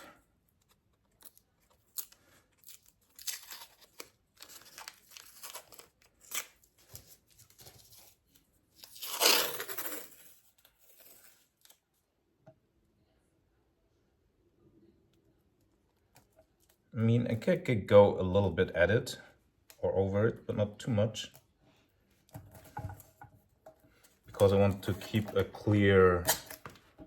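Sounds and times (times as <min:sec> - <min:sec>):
adhesive tape ripping: 0:01.2 - 0:06.9, 0:08.8 - 0:11.8, 0:26.1 - 0:26.7.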